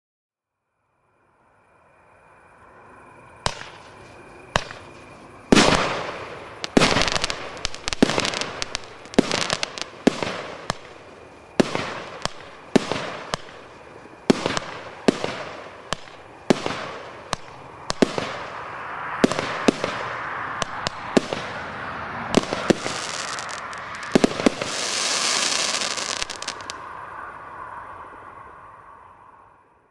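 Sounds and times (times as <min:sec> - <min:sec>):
firework bangs: 0:03.5 - 0:18.6, 0:19.2 - 0:26.8
loud firework hissing: 0:03.5 - 0:18.7, 0:22.4 - 0:26.8
firework crackle: 0:03.5 - 0:26.8.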